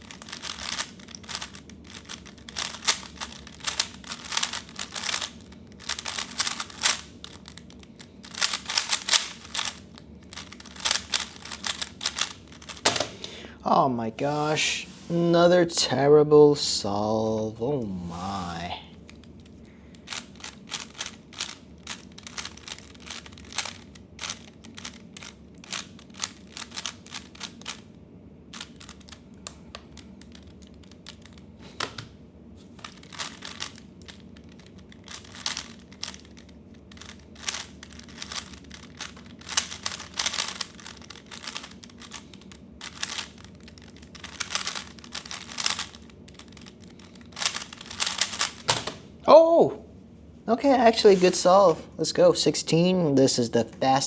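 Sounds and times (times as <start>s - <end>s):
puzzle cube plastic clicking: 0.0s - 13.1s, 19.9s - 27.9s, 28.5s - 32.1s, 32.8s - 49.0s.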